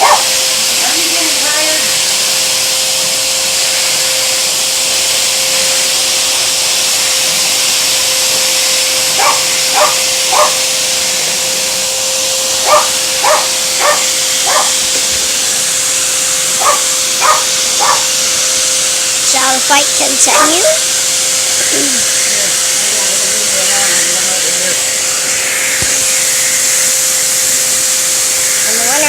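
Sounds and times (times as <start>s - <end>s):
dog barking: 0.0s - 0.3s, 9.2s - 10.6s, 12.6s - 14.8s, 16.6s - 18.1s, 20.3s - 20.8s
vacuum cleaner running: 0.0s - 29.0s.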